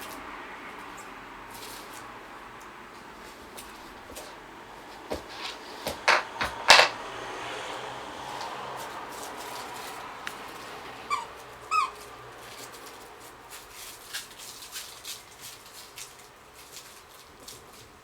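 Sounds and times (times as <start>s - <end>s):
squeaky toy squeaking: 11.1s - 12.1s.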